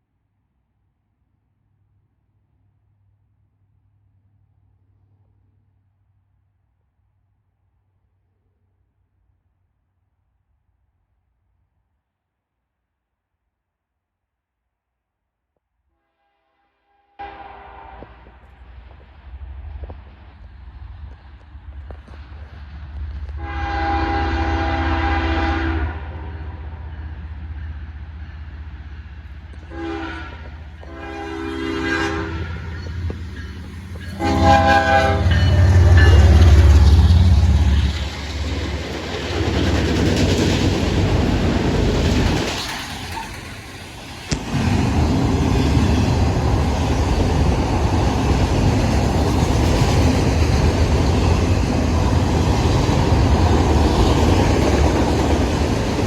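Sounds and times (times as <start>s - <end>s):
locomotive air horn: 16.0s - 18.4s, 23.4s - 26.6s, 29.6s - 36.7s
rail cars rumbling and clattering: 17.6s - 56.0s
locomotive engine rumble: 26.1s - 56.0s.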